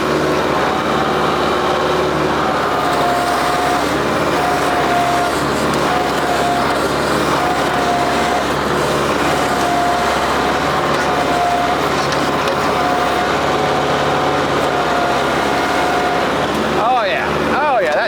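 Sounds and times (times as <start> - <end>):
tractor engine under load: 0.0 - 18.0.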